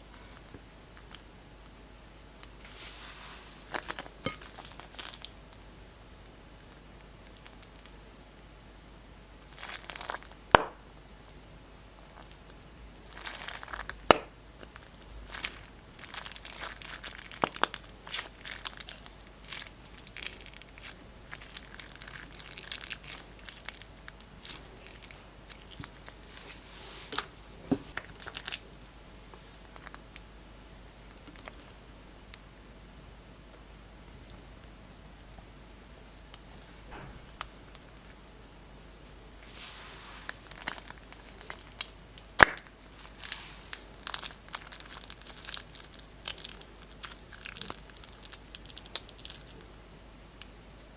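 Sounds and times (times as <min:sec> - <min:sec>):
plastic bag and slime crinkling: 0:02.6 - 0:05.6, 0:06.6 - 0:08.0, 0:09.4 - 0:10.8, 0:12.0 - 0:30.2, 0:31.1 - 0:31.8, 0:39.4 - 0:49.7.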